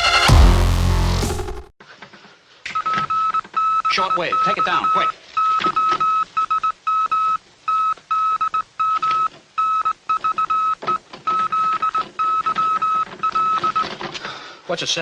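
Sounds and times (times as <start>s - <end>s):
morse code beeping tone: 3.1s - 13.8s.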